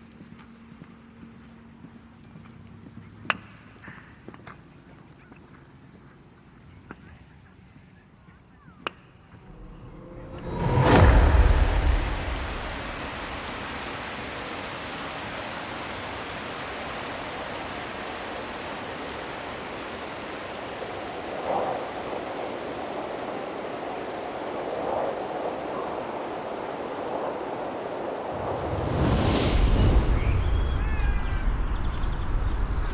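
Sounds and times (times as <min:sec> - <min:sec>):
loud low rumble: 0:09.4 - 0:15.0, 0:28.4 - 0:32.9
rushing water: 0:09.4 - 0:30.2.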